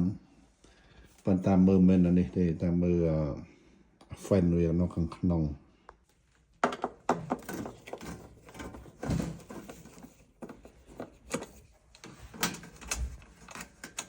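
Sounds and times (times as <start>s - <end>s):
refrigerator parts knocking and rustling: 6.6s - 14.0s.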